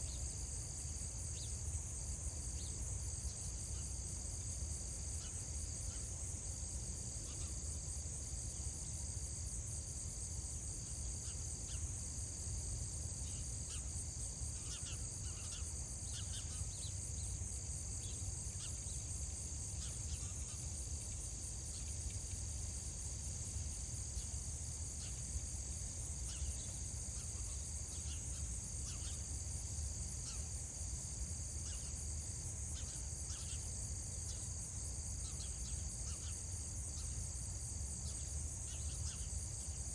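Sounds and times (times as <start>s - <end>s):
shrill insect chorus: 10.8s - 12.4s, 13.0s - 39.9s.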